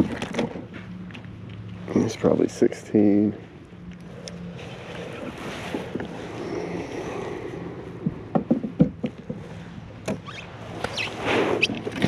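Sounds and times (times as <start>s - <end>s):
faint steady hum: 0.0s - 11.9s
wind: 0.0s - 12.0s
water: 1.9s - 12.0s
knocks and clatters on hull: 8.0s - 10.2s.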